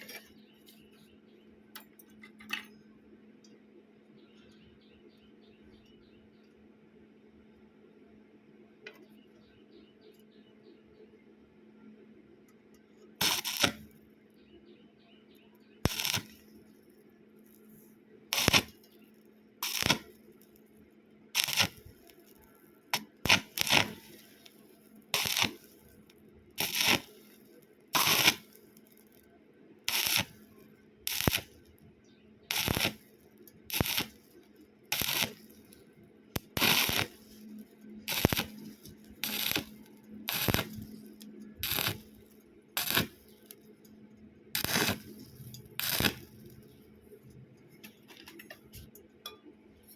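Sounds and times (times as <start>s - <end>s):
steady low hum: 2.6s - 48.0s
welding arc bursts: 13.2s - 13.9s, 15.9s - 16.5s, 18.3s - 19.0s, 19.6s - 20.2s, 21.4s - 29.2s, 29.9s - 31.7s, 32.5s - 35.8s, 36.4s - 43.6s, 44.5s - 46.8s.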